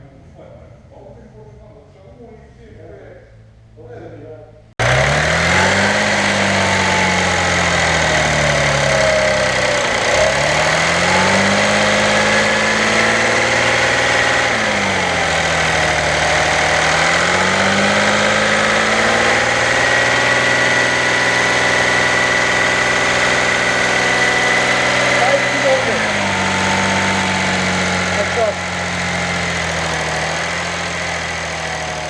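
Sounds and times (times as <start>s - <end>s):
diesel engine revving: 4.8s - 32.0s.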